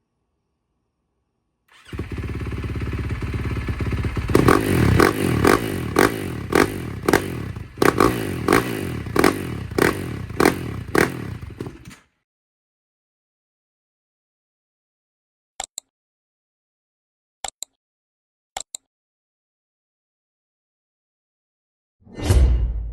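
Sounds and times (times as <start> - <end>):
motorcycle engine revving: 1.7 - 12.0.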